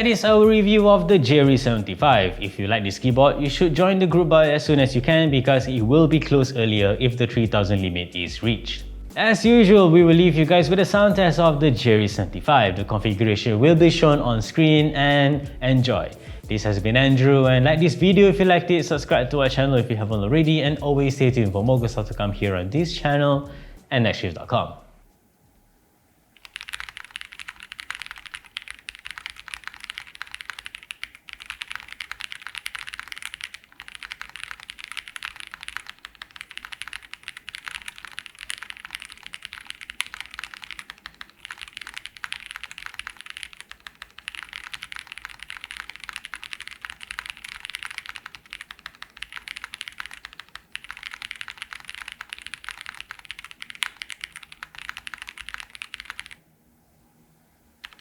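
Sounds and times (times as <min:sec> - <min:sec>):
mechanical keyboard typing: 0:26.4 - 0:56.4.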